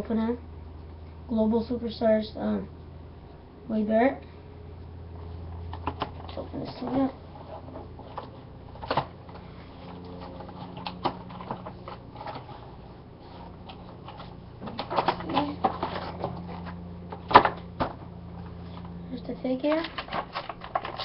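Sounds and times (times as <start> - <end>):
packaging crinkling and clicking: 14.1 - 17.6, 19.7 - 21.0.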